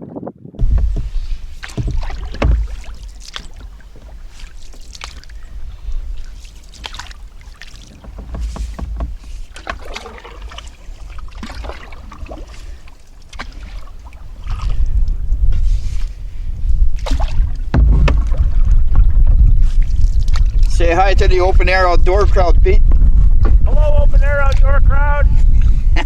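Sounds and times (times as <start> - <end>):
wind rumble on microphone: 0.0 - 26.0
light knocks: 0.6 - 4.2, 7.9 - 9.9
paddle splashes: 0.6 - 21.0, 23.4 - 24.7.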